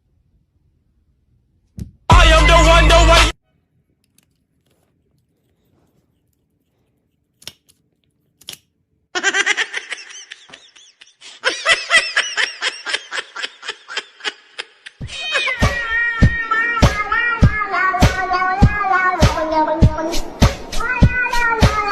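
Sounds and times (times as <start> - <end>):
person laughing: 9.2 - 15.8.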